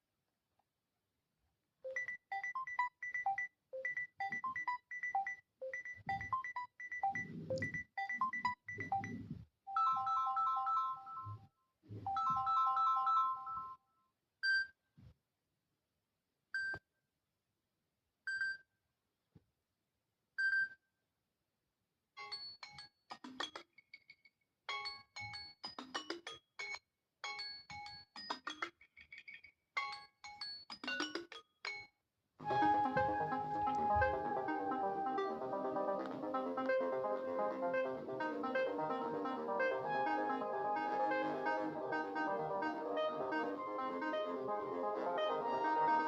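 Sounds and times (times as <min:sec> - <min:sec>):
phone ringtones: 0:06.0 - 0:11.3.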